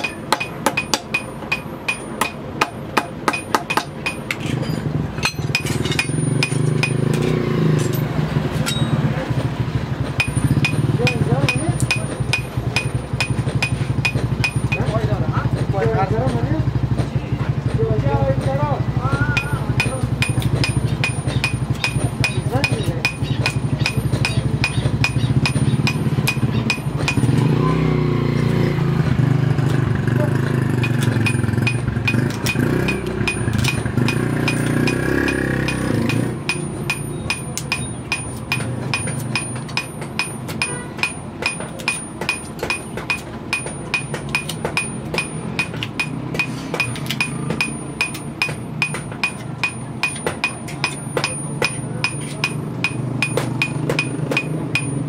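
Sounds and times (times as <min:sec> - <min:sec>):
hammer striking steel anvil: 0:00.0 - 0:09.1, 0:10.2 - 0:15.2, 0:19.3 - 0:27.7, 0:30.7 - 0:55.0
voices: 0:08.5 - 0:29.1.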